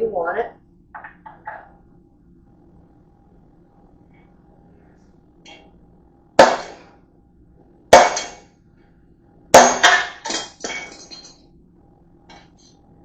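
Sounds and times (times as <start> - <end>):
hammer striking rivet: 8.0 - 8.4.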